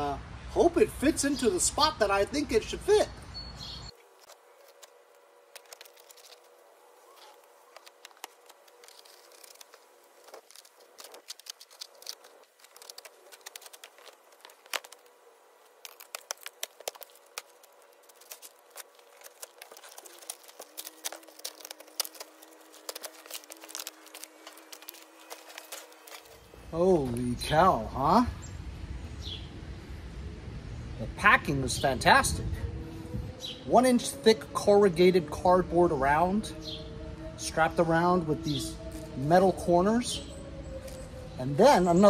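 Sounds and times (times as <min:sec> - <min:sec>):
cardboard crinkling and tearing: 0:04.0 - 0:26.6.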